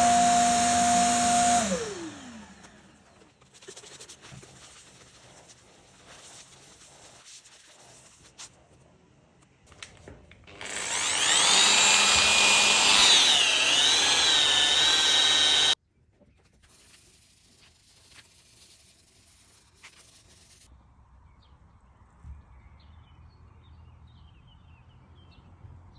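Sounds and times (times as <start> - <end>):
power tool whining: 0.0 - 3.0, 10.4 - 15.8.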